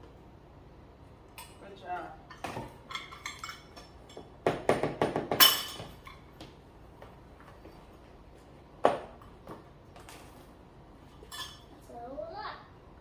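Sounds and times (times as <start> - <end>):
utensils clinking against bowl: 1.4 - 6.3, 11.2 - 11.7.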